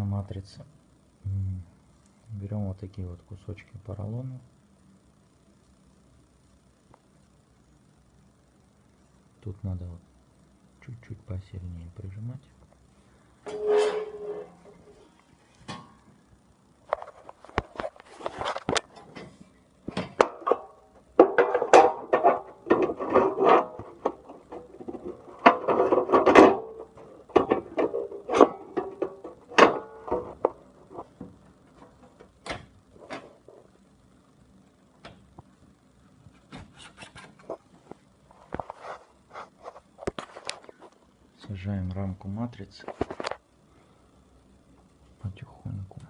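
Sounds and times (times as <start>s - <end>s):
rubbing and scraping: 13.5s - 15.1s, 21.2s - 31.2s, 36.3s - 40.9s.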